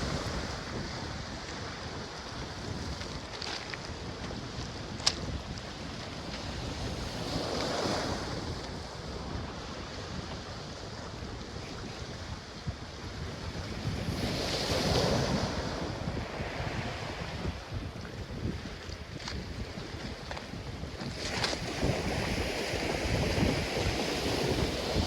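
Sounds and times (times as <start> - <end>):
waves washing up on beach: 0.0 - 25.0
wind buffeting microphone: 0.0 - 25.0.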